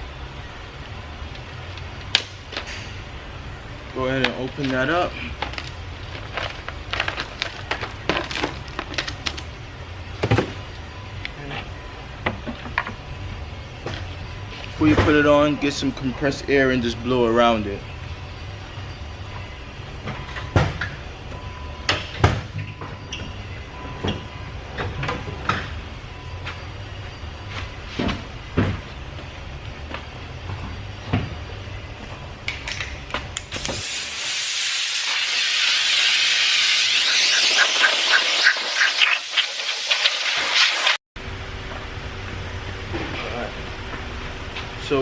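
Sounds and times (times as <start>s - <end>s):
air blow gun hissing: 33.5s - 41.0s.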